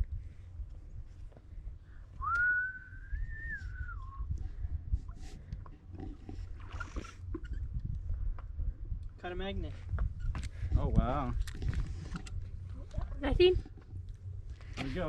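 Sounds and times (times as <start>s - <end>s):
low rumble: 0.0s - 15.0s
person whistling: 2.2s - 4.3s.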